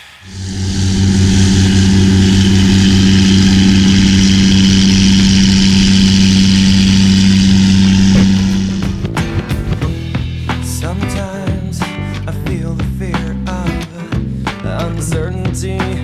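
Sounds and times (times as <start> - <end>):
diesel machine humming: 0.2 - 16.0.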